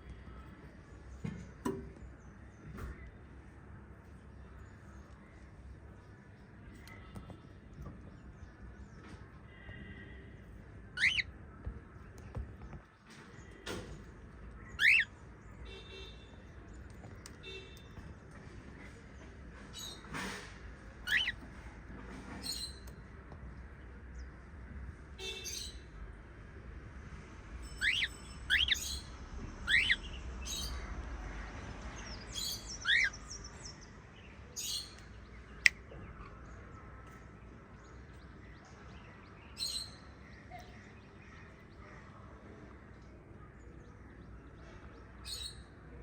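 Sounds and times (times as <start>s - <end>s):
parrots chirping and squawking: 10.9s - 11.3s, 14.7s - 15.1s, 21.0s - 21.5s, 27.6s - 30.8s, 32.3s - 33.2s.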